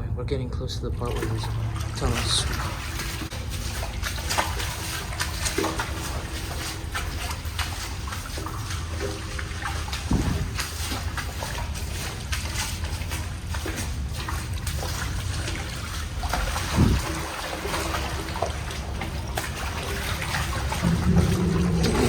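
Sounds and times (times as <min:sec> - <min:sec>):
water trickling and sloshing: 0:00.1 - 0:22.0
splashy footsteps: 0:00.9 - 0:22.0
low rumble: 0:09.9 - 0:10.8, 0:16.6 - 0:17.3, 0:20.5 - 0:22.0.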